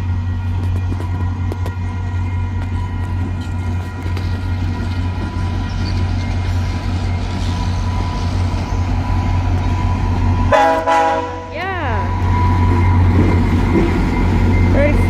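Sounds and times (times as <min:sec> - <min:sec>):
train rumbling past: 0:00.0 - 0:15.0
locomotive horn blast: 0:10.5 - 0:12.2.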